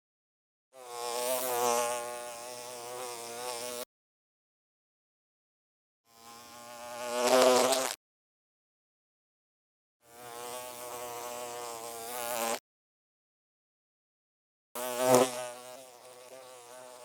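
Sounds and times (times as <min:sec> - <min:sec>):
bee buzzing in flight: 0:00.8 - 0:03.9, 0:06.1 - 0:08.0, 0:10.1 - 0:12.6, 0:14.8 - 0:17.0.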